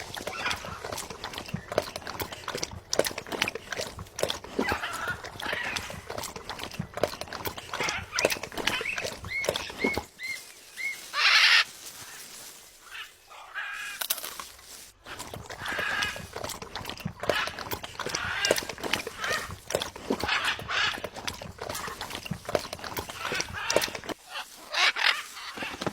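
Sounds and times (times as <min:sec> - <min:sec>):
clicking and chattering: 0:00.0 - 0:10.1, 0:15.1 - 0:24.2
macaw squawking: 0:07.8 - 0:14.0, 0:20.2 - 0:21.2, 0:23.1 - 0:25.9.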